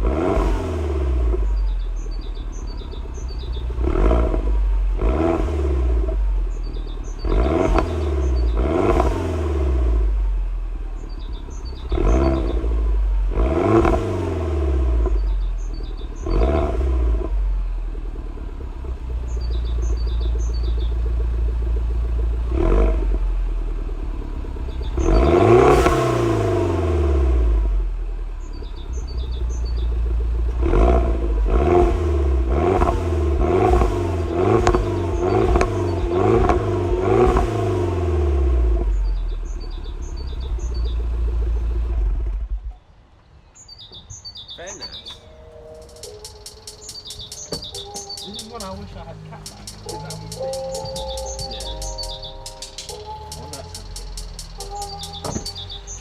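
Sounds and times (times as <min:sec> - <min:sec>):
car engine revving: 0:00.0 - 0:43.0, 0:44.8 - 0:56.0.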